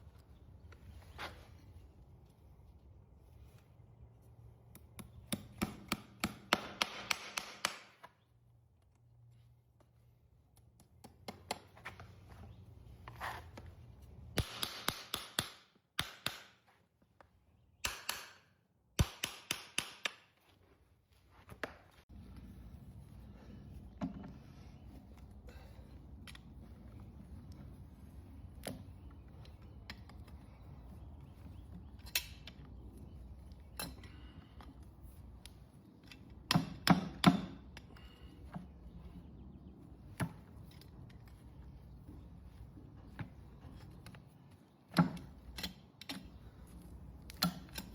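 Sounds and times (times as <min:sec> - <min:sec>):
hoof trimming snaps and cracks: 0:04.6 - 0:09.1, 0:10.5 - 0:12.1, 0:13.5 - 0:20.4, 0:25.8 - 0:47.9.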